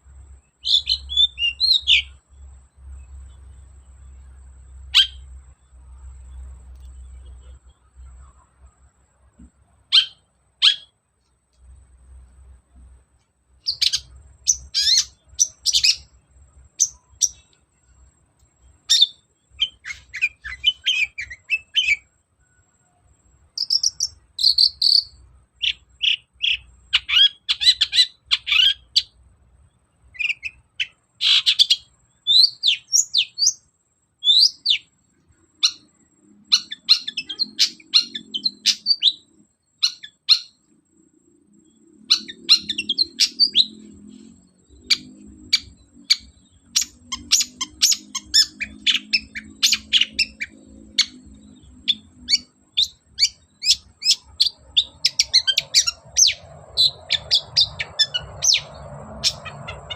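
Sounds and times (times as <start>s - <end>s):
bird singing chattering notes: 0.4s - 2.3s, 9.8s - 10.9s, 13.6s - 17.6s, 18.5s - 22.1s, 23.5s - 29.2s, 30.2s - 40.7s, 41.6s - 59.9s.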